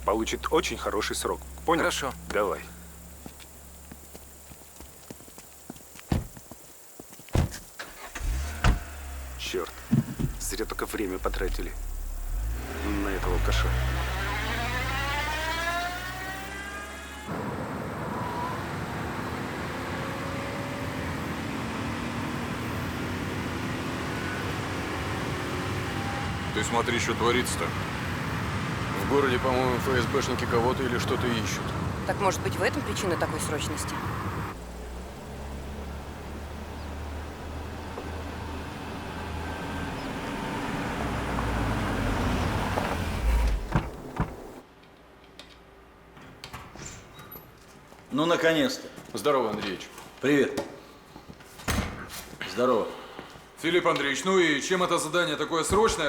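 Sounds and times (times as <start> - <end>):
car engine hum: 0.0 - 5.4, 7.4 - 44.6
tyre and road noise: 0.0 - 54.3, 55.5 - 56.0
car doors shutting: 6.1 - 6.4, 7.3 - 11.7, 41.1 - 44.6.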